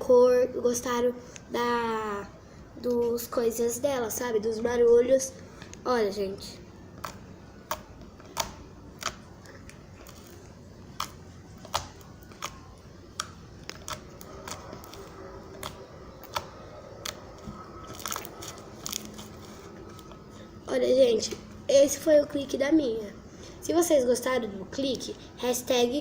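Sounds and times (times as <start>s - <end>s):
slime clicking and popping: 7.0s - 19.6s.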